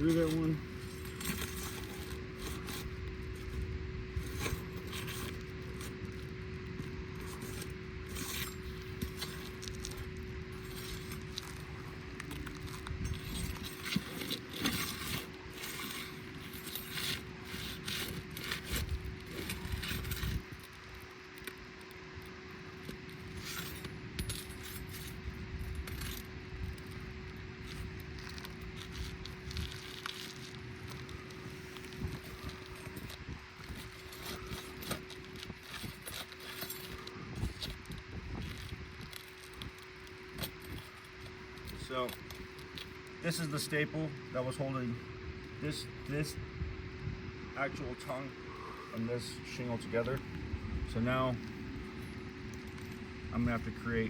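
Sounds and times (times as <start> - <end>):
metal tools scraping shingles: 0.0 - 20.7, 22.9 - 27.0, 27.6 - 44.9
faint steady hum: 0.0 - 54.0.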